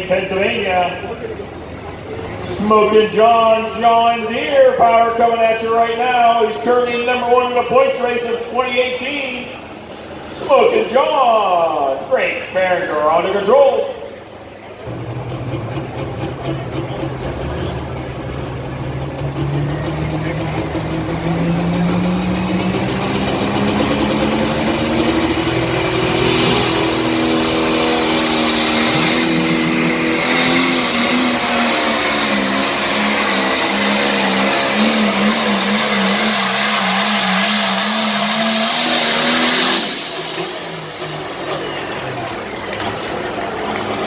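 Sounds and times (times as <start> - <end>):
diesel tractor engine at full throttle: 0.0 - 44.0.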